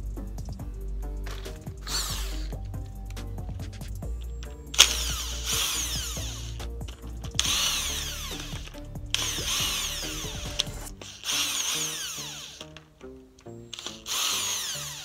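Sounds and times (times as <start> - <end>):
background music: 0.0 - 15.0
power tool motor whine: 1.3 - 2.6, 4.8 - 12.9, 13.7 - 15.0.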